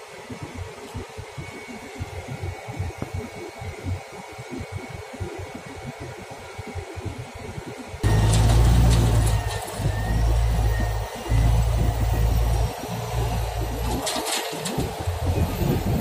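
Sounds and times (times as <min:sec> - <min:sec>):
rushing cooling air: 0:00.0 - 0:16.0
wind buffeting on microphone: 0:14.6 - 0:16.0.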